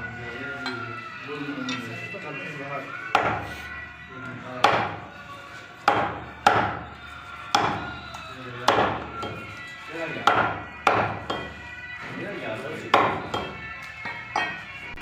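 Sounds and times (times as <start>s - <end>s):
heavy knife chopping meat: 3.1s - 3.7s, 4.6s - 5.1s, 5.8s - 9.5s, 10.1s - 12.1s, 12.7s - 15.0s.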